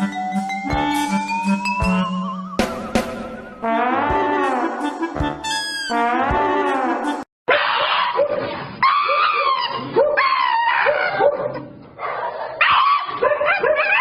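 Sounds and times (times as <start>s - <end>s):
dog yipping and whining: 7.5s - 11.4s, 12.6s - 14.0s.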